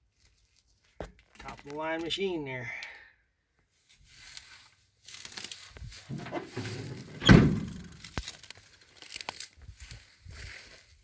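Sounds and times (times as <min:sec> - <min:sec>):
rustling: 0:04.2 - 0:10.0
heavy truck door shutting: 0:06.1 - 0:08.0.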